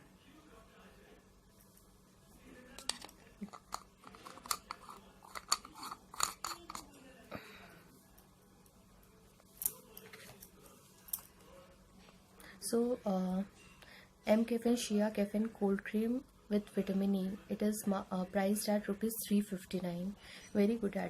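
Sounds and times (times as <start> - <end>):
clicks of hands handling small objects: 2.8 - 7.0.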